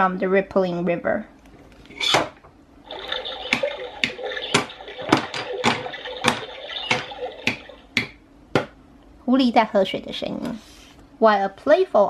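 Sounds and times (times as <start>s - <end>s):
running water trickle: 2.8s - 8.2s
animal lapping water: 2.9s - 8.1s.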